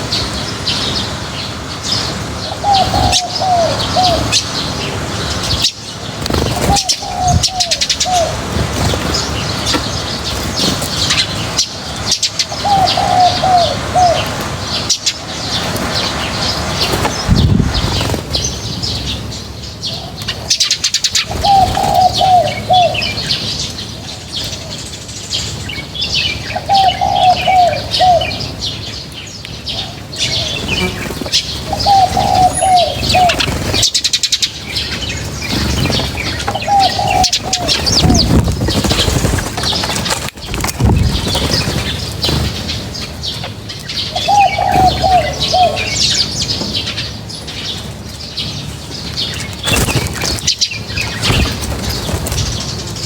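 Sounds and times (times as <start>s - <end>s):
small birds chirping and twittering: 0.0s - 53.0s
dove cooing: 2.4s - 14.8s, 19.9s - 24.7s, 26.4s - 28.7s, 29.7s - 34.0s, 34.7s - 42.9s, 44.0s - 47.0s
wings fluttering: 2.7s - 19.4s, 20.2s - 22.6s, 30.3s - 47.2s, 48.7s - 53.0s.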